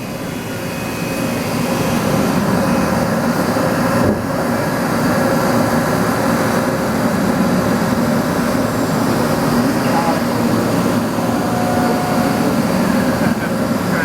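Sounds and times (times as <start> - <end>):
machine tool running: 8.0 - 14.0.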